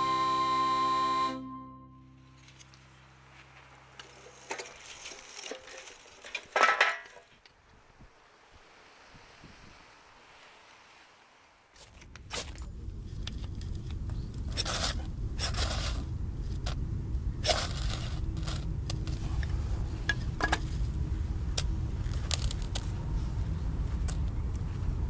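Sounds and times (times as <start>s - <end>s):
scrapes and crunches of handling: 2.3s - 7.4s
steady low rumble: 12.6s - 25.0s.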